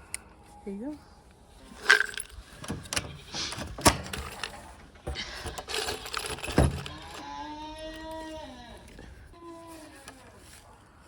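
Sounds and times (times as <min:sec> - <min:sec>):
metal tools clinking and rattling: 0:01.6 - 0:09.2
goat bleating: 0:03.0 - 0:03.6, 0:06.8 - 0:10.1.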